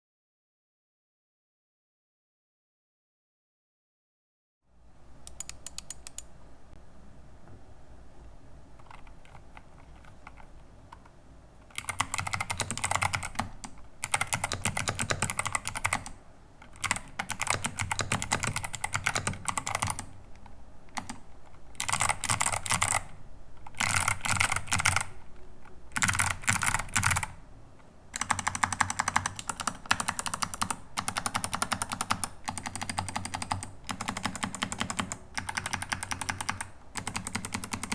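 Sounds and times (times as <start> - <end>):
mechanical keyboard typing: 5.3 - 6.3, 8.8 - 11.1, 11.7 - 25.2, 26.0 - 27.4, 28.1 - 37.9.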